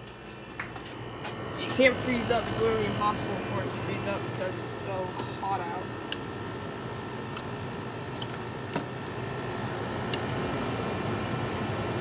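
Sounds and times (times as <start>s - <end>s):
air conditioner fan and compressor: 0.0s - 12.0s.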